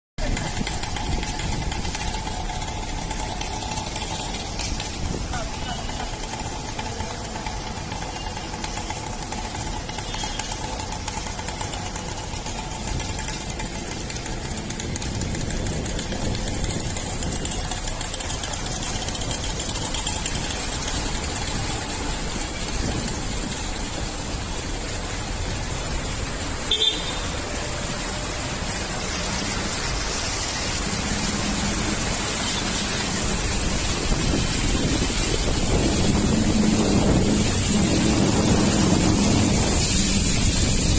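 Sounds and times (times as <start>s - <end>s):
engine hum: 0.2s - 40.9s
traffic on wet road: 0.2s - 40.9s.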